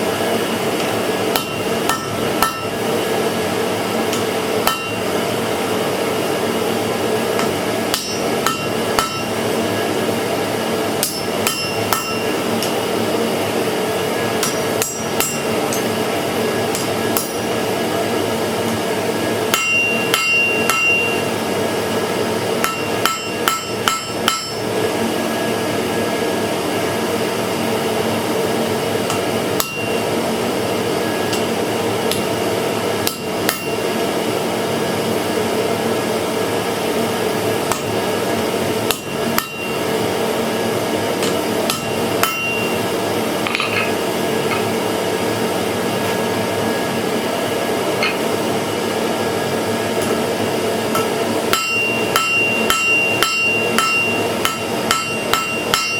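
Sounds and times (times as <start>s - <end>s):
steady hum: 0.0s - 55.9s
hammer striking iron on anvil: 0.8s - 2.8s, 4.1s - 5.2s, 7.4s - 9.4s, 11.0s - 12.8s, 14.4s - 16.0s, 16.7s - 17.5s, 19.5s - 21.3s, 22.6s - 24.7s, 29.1s - 30.0s, 33.0s - 33.8s, 37.6s - 38.0s, 38.9s - 39.9s, 41.2s - 42.8s, 43.5s - 44.7s, 48.0s - 48.3s, 50.9s - 55.9s.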